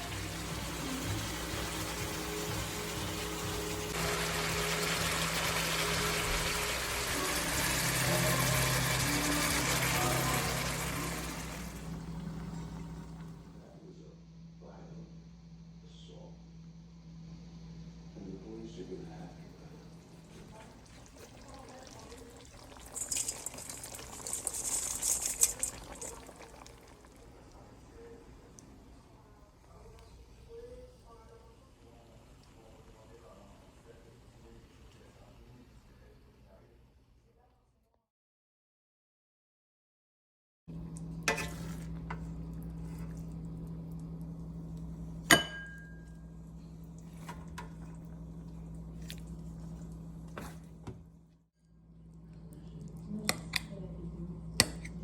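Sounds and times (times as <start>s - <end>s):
food sizzling in a pan: 0.0s - 13.5s, 20.4s - 28.1s
steady low hum: 7.2s - 37.1s, 40.7s - 55.0s
kitchenware clinking: 45.3s - 46.2s.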